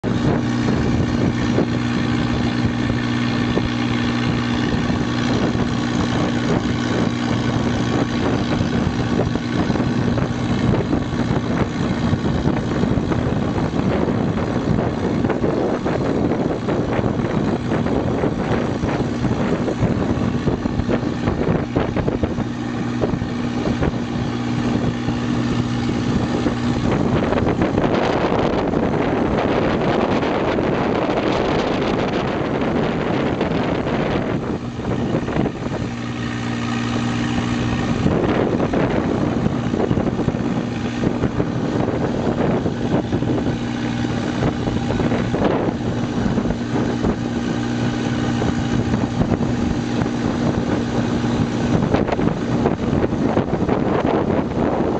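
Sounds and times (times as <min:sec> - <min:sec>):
boat engine running: 0:00.0 - 0:54.9
wind on microphone: 0:00.0 - 0:54.9.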